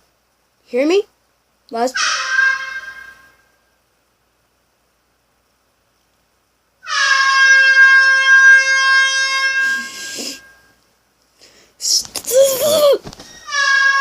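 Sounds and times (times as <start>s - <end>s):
noisemaker reedy tone: 7.3s - 10.8s.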